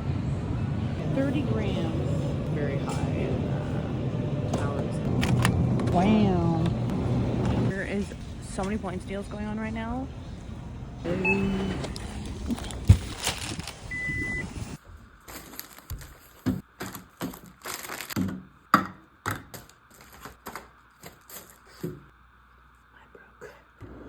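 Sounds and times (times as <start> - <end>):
plastic packaging crinkling: 12.2 - 13.9, 15.2 - 18.2, 19.6 - 21.8
items being put down: 15.2 - 22.1.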